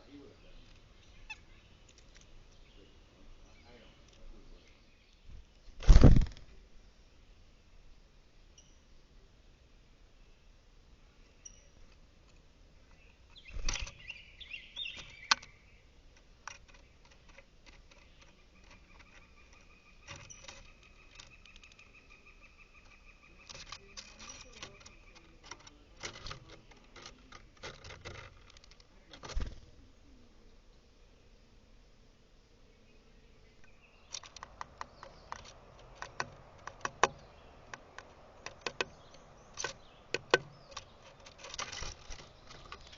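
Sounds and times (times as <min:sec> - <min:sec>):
bird wing flutters and taps: 0:05.8 - 0:06.5, 0:13.4 - 0:14.0, 0:23.5 - 0:29.7, 0:34.1 - 0:42.9
faint steady tone: 0:06.6 - 0:28.0.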